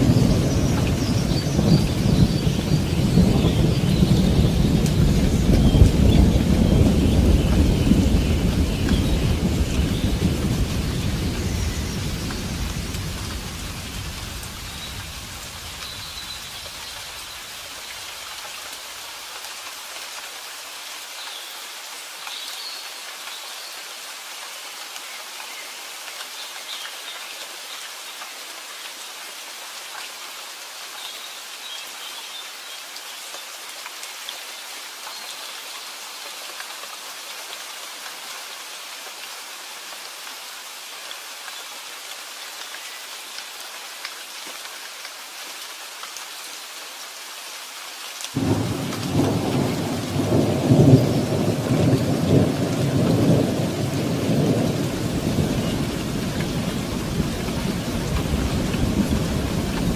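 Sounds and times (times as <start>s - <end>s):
thunder rumble: 0.0s - 15.8s, 48.4s - 59.9s
steady rain falling: 0.0s - 59.9s.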